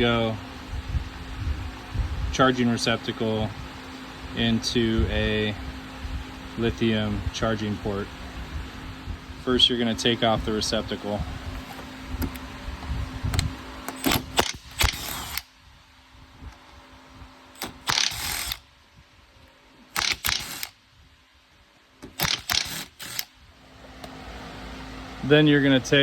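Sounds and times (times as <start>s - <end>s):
mechanical clicking and whirring: 13.2s - 15.5s, 17.6s - 18.7s, 19.9s - 20.8s, 22.0s - 23.3s.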